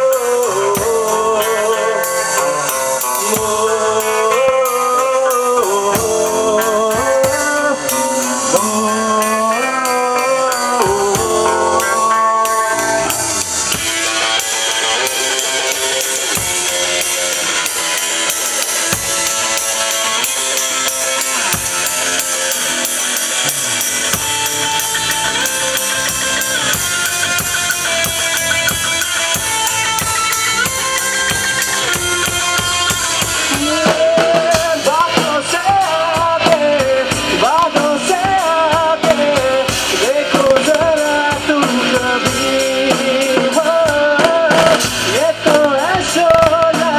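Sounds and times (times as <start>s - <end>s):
drum kit: 0.0s - 46.9s
held guitar chords: 0.0s - 46.9s
live rock band playing: 0.0s - 46.9s
bending melody line: 18.8s - 42.9s.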